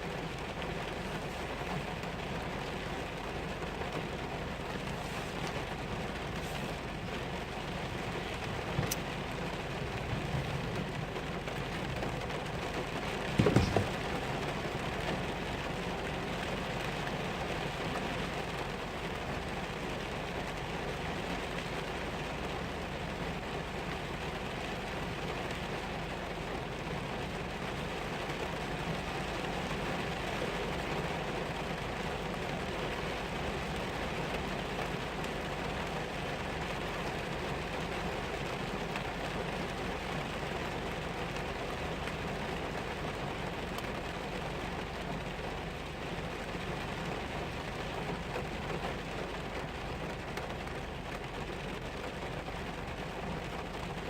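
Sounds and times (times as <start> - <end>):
steady rain falling: 0.0 - 54.0
loud thump: 13.4 - 14.2.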